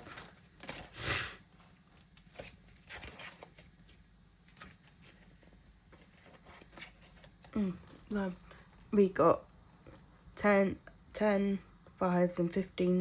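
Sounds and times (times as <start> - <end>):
paper and card rustling: 0.0 - 8.6.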